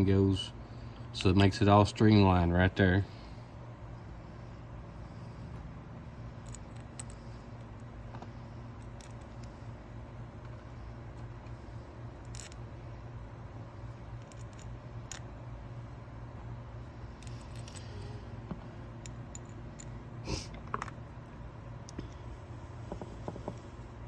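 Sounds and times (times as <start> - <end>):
steady low hum: 0.0 - 24.0
small metal parts clicking: 6.4 - 9.8, 10.4 - 12.7, 13.8 - 15.3, 17.1 - 21.2.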